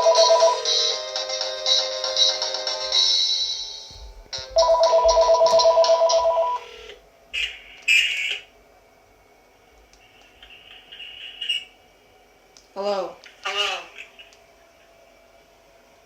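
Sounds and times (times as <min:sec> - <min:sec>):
melodic phone ringtone: 0:00.0 - 0:06.8.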